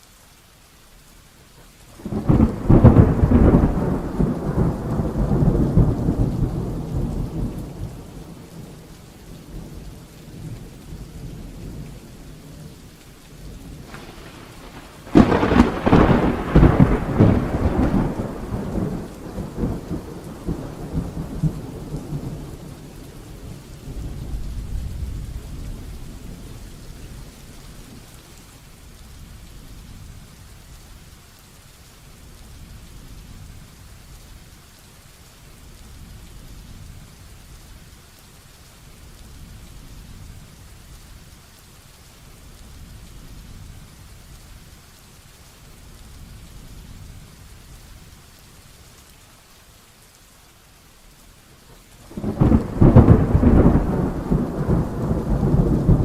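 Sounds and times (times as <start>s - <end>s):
heavy rain falling: 0.0s - 56.0s
thunder rolling: 2.0s - 8.8s, 13.7s - 22.8s, 52.0s - 56.0s.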